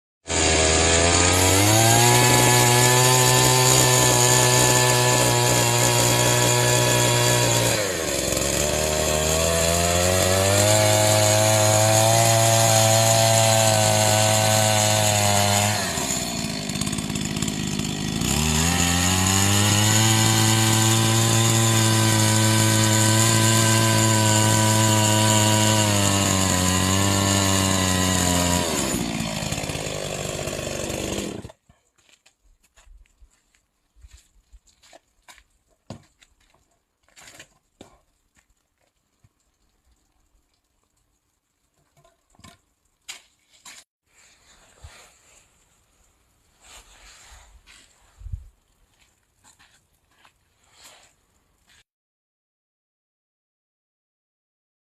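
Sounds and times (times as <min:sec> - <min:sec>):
chainsaw cutting wood: 0:00.2 - 0:32.2.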